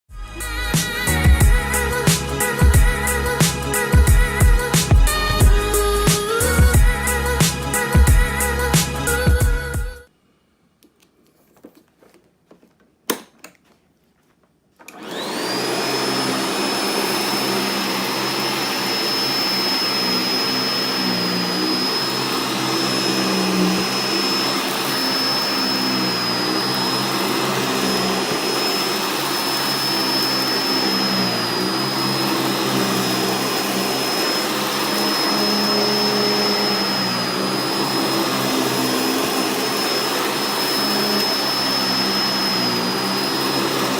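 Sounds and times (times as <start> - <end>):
vacuum cleaner motor whining: 0.9 - 7.0, 14.8 - 43.9.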